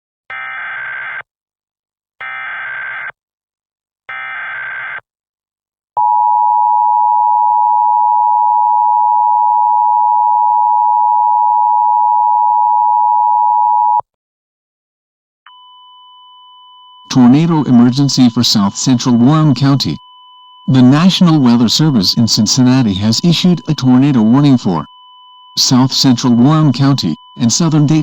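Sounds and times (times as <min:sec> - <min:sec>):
two-tone attention signal: 0:15.5 - 0:28.0
digital data bursts: 0:20.6 - 0:24.9, 0:25.6 - 0:28.0.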